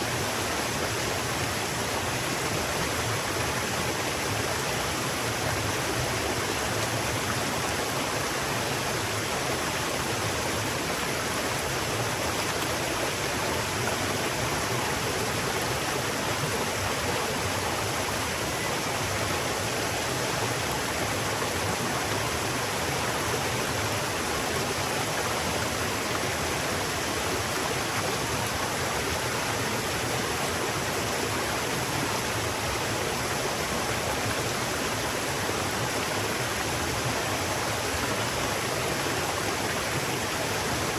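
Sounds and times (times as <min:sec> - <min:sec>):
river water flowing: 0:00.0 - 0:40.9.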